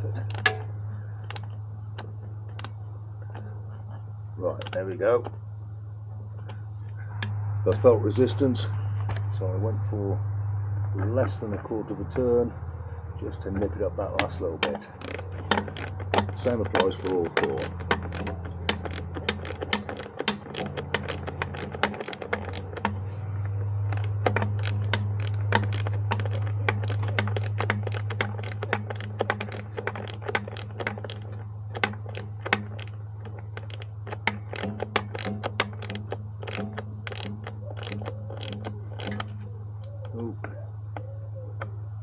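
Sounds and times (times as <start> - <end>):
steady low hum: 0.0 - 42.0
socket ratchet clicking: 13.6 - 40.0.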